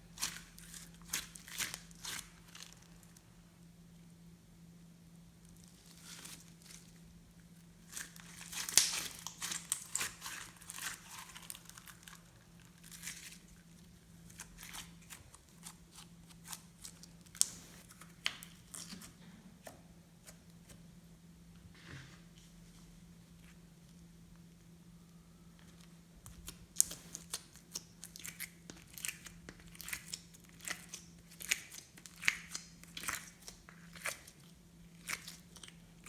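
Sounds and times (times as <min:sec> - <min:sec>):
faint low hum: 0:00.0 - 0:36.0
hands crinkling material: 0:07.8 - 0:19.2.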